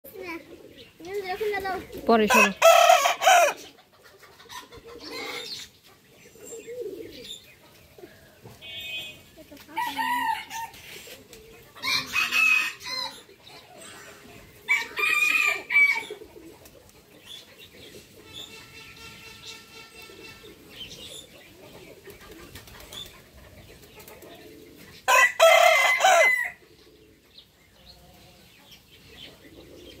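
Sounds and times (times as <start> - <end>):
roosters crowing: 2.2 - 3.7, 9.7 - 10.8, 11.8 - 13.3, 14.1 - 16.3, 25.0 - 26.6.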